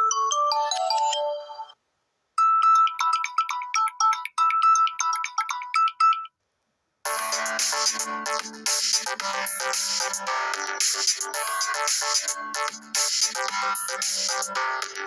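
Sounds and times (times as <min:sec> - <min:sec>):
phone ringtone: 0:00.0 - 0:01.8, 0:02.4 - 0:06.4, 0:07.1 - 0:15.0
bright electronic ringtone notes: 0:02.4 - 0:06.3, 0:07.1 - 0:15.0.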